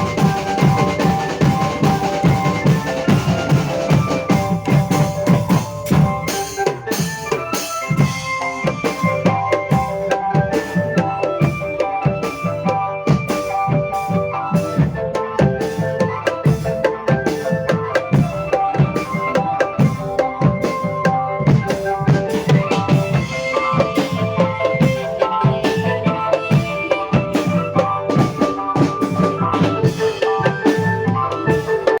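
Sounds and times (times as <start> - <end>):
fast dense drumming: 0.0 - 6.4.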